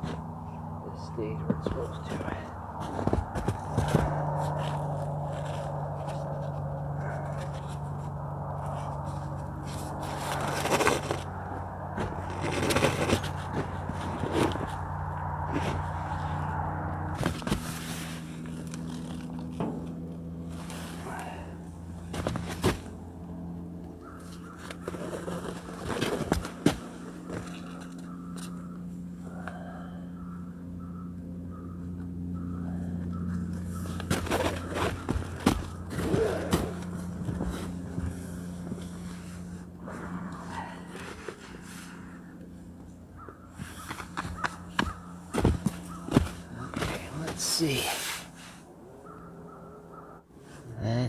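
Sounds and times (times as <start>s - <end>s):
steady low hum: 0.0s - 51.0s
tent fabric scraping and rustling: 8.7s - 11.3s, 12.0s - 14.8s, 17.1s - 19.2s, 20.5s - 21.1s.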